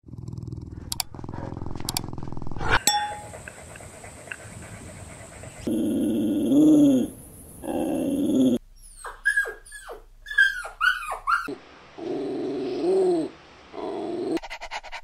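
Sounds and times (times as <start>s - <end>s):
puppy growling: 3.7s - 8.6s, 11.3s - 14.4s
puppy yelping: 8.8s - 11.6s.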